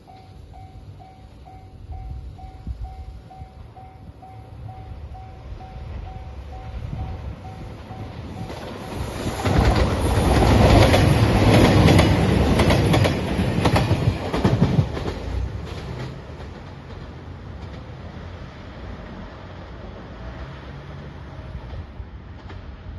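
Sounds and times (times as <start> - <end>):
train passing: 0.0 - 22.9
wheels clacking over rail joints: 7.7 - 18.1.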